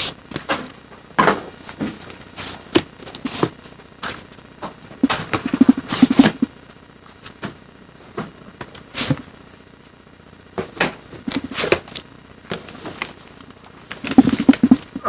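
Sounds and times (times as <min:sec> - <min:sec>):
cardboard rustling and scraping: 0:00.0 - 0:04.4, 0:05.0 - 0:06.5, 0:08.2 - 0:09.3, 0:10.6 - 0:14.9.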